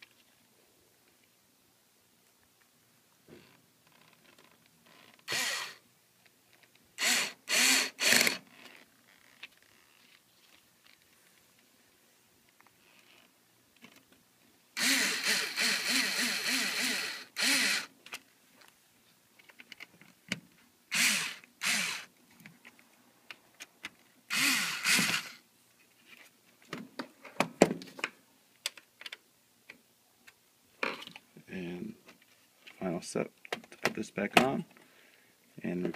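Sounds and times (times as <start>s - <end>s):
electric screwdriver whirring: 5.3s - 5.8s, 7.0s - 8.4s, 14.8s - 17.9s, 20.9s - 22.1s, 24.3s - 25.4s.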